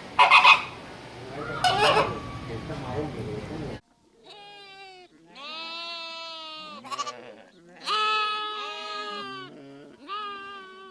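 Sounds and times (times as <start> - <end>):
goat or sheep bleating: 4.3 - 10.9.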